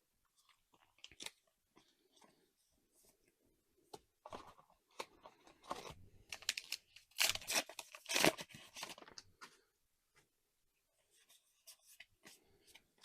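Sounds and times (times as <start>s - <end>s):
foil wrapper tearing and crinkling: 6.3s - 9.1s.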